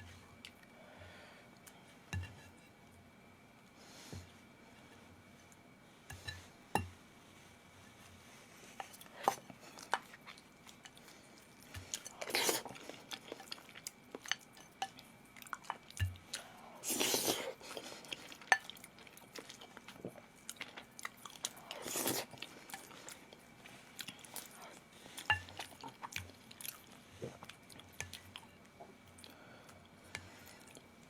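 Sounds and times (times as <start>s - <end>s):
person chewing food: 8.8s - 31.0s.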